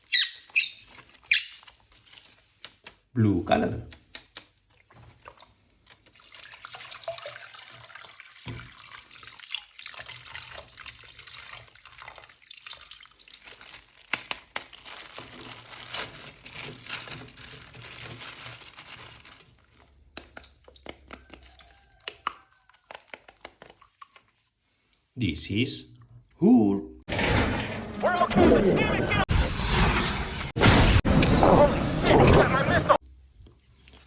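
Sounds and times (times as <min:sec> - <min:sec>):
tap water running: 0:04.9 - 0:13.4.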